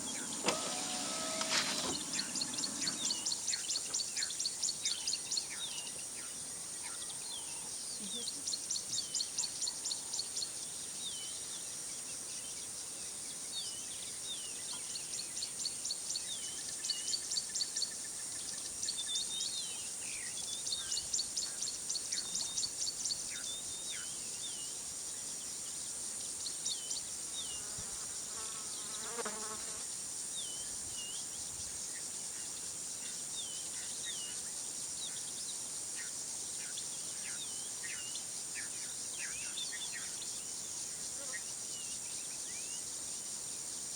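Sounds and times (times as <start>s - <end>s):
high insect drone: 0.0s - 4.6s.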